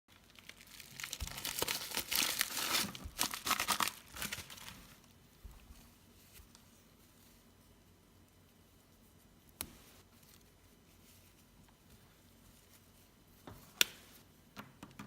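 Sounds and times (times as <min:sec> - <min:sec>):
plastic packaging crinkling: 0:00.1 - 0:05.1.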